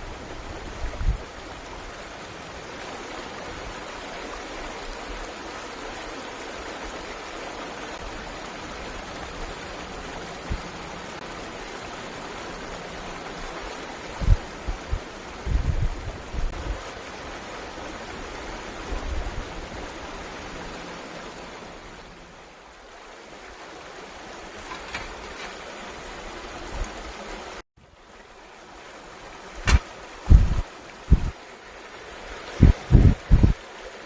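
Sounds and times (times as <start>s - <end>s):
flowing stream: 0.0s - 34.0s
sharp knock: 29.6s - 30.6s
low thumps: 29.6s - 31.3s, 32.6s - 33.6s.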